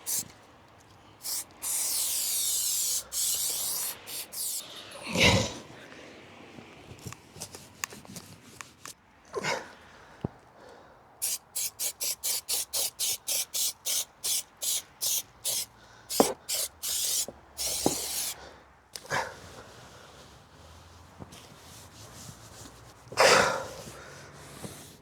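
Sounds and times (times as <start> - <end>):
spray adhesive hissing: 0.0 - 0.3, 1.2 - 4.8, 11.2 - 18.4.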